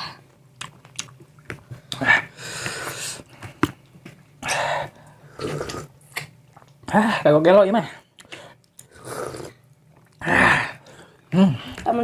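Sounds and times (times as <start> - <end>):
low steady hum: 0.0 - 12.0
wet chewing and biting: 0.6 - 2.0
loud sucking breaths: 8.9 - 9.6.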